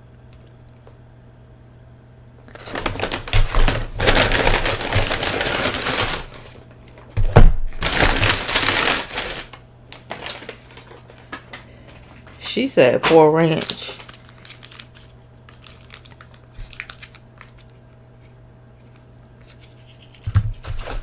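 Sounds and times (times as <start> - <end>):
paper bag and wrappers rustling: 2.5 - 17.8, 19.4 - 21.0.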